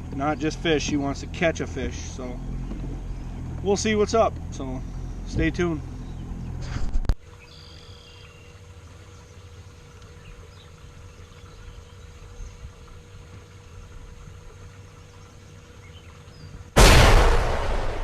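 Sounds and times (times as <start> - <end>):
faint hum: 0.0 - 18.0
low rumble: 16.8 - 18.0.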